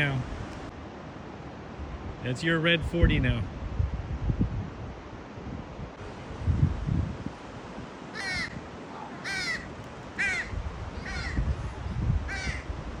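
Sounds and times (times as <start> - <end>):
wind thumps on microphone: 3.0 - 7.5, 9.6 - 13.0
crows cawing: 8.1 - 11.5, 12.3 - 12.7.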